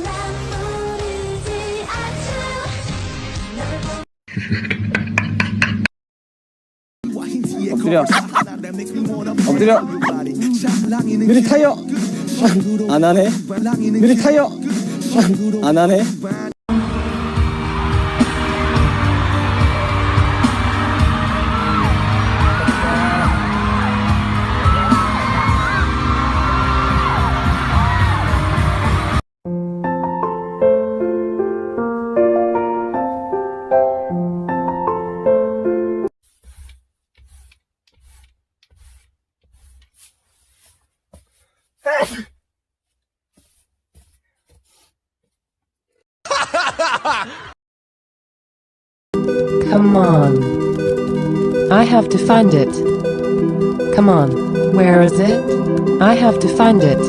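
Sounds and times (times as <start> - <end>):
loud pop music: 7.0 - 29.2
pulsing laughter: 8.0 - 8.5
voices whooping and yelling: 17.7 - 28.3.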